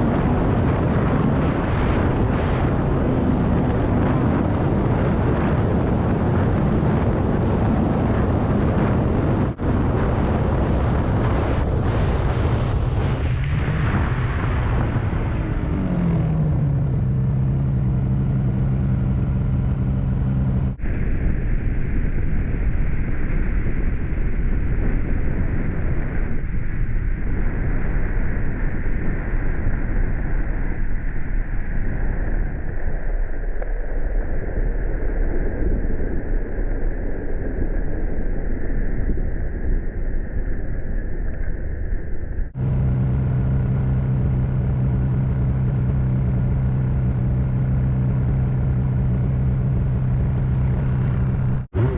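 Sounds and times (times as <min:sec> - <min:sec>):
snowmobile engine running: 0:00.0 - 0:20.8, 0:42.6 - 0:51.9
wind rush on microphone: 0:00.0 - 0:51.9.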